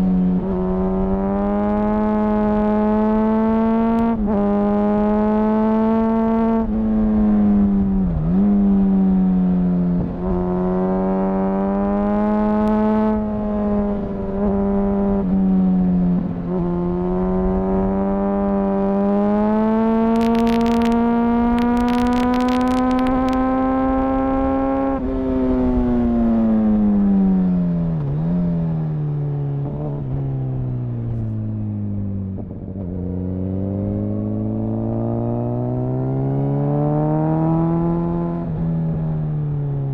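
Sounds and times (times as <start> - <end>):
motorcycle engine and exhaust: 0.0 - 39.9
sharp clicks: 20.1 - 23.4.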